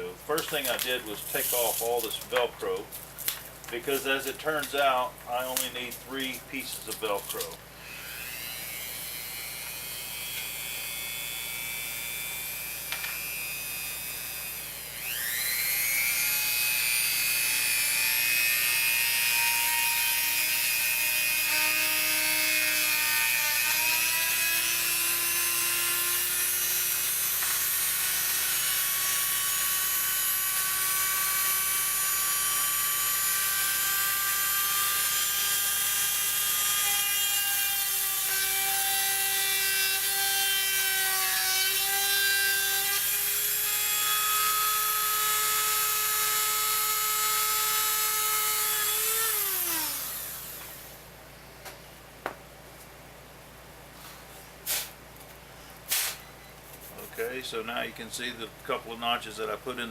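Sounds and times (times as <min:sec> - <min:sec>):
power tool motor whining: 0:06.2 - 0:51.0.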